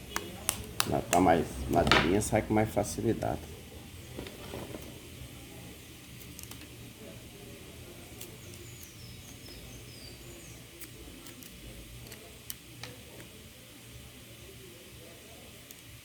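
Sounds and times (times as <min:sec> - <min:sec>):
dry husk cracking: 0:00.0 - 0:02.2.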